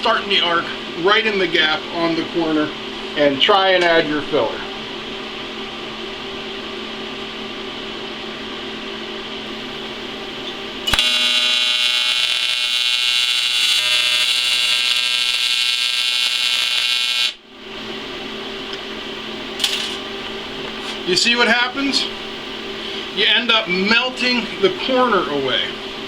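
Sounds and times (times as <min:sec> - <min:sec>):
welding machine hum: 0:09.5 - 0:21.4
welding arc buzzing: 0:09.5 - 0:23.4.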